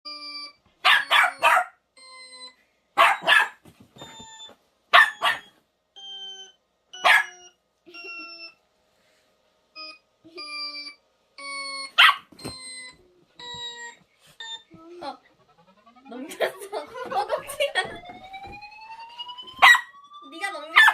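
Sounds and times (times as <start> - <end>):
small dog barking: 0.8 - 1.8, 3.0 - 3.6, 4.9 - 5.5, 7.0 - 7.4, 12.0 - 12.3, 19.6 - 19.9.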